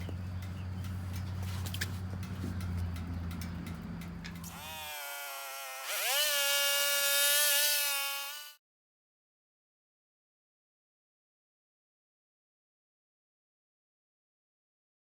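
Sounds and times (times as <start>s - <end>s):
saw whine and cutting hiss: 4.5s - 8.6s.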